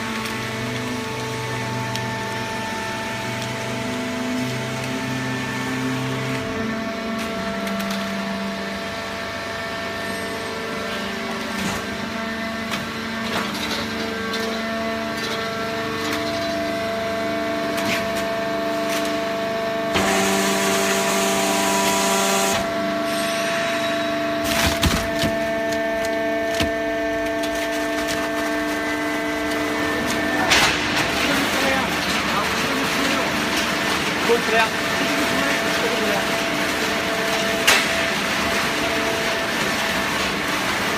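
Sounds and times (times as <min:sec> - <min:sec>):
hydraulic press motor hum: 0:00.0 - 0:34.2
cardboard cracking and knocking: 0:24.4 - 0:25.8.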